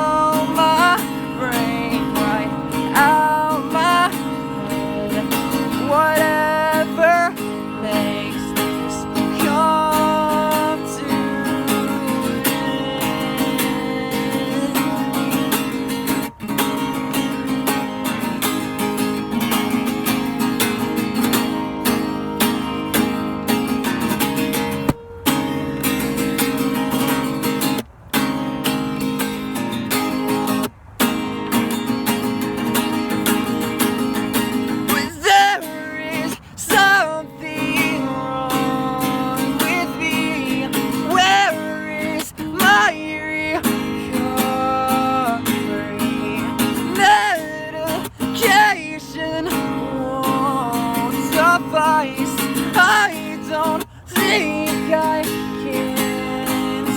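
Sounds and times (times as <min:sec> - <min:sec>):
person singing: 0:00.0 - 0:16.3, 0:34.9 - 0:56.9
acoustic guitar strumming: 0:00.0 - 0:56.9.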